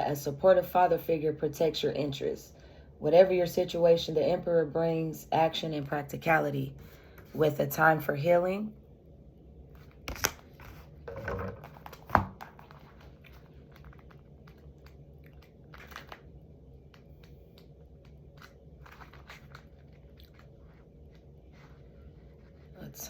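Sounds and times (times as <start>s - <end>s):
rustling: 11.6s - 23.0s.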